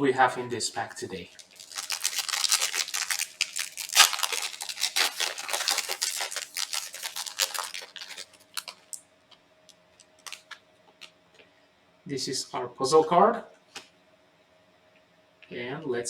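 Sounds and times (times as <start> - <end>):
foil wrapper tearing and crinkling: 1.3 - 9.0, 10.1 - 11.1.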